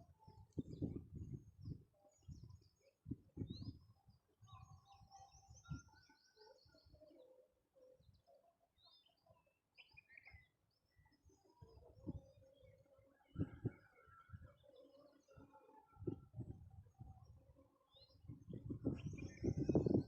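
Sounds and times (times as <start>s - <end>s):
birds chirping and trilling: 17.6s - 20.0s.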